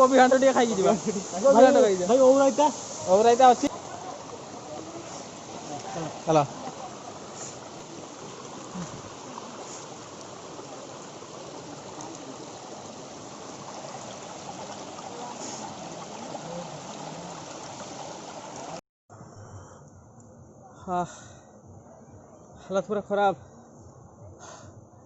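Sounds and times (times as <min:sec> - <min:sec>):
stream and waterfall rushing: 0:00.0 - 0:18.8.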